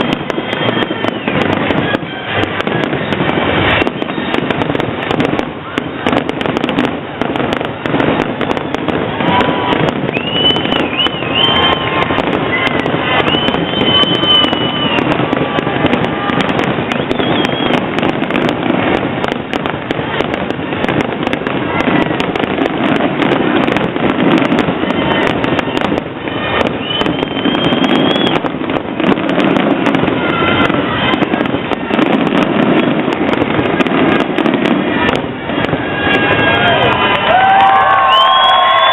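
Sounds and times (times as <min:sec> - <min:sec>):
fireworks crackling and popping: 0:00.0 - 0:38.9
high wavering whistle: 0:09.5 - 0:15.1, 0:16.9 - 0:17.8, 0:26.7 - 0:28.4.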